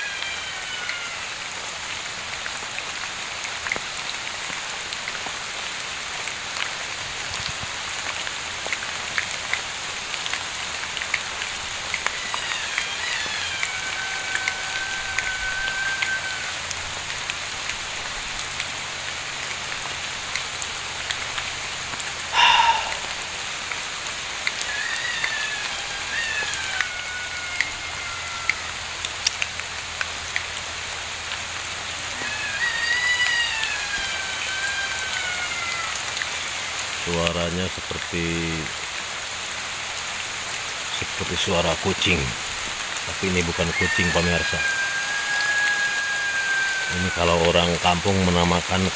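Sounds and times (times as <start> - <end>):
long cat-like animal calls: 0.0 - 1.9, 11.0 - 17.0, 22.0 - 29.6, 31.9 - 37.2, 43.2 - 48.9
steady rain on forest: 0.0 - 48.9
short loud animal cry: 22.3 - 23.2.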